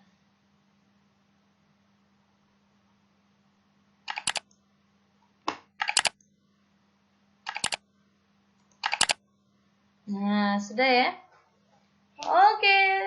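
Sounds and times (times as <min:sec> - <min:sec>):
mouse clicks: 0:04.1 - 0:04.6, 0:05.8 - 0:06.3, 0:07.5 - 0:07.8, 0:08.6 - 0:09.2.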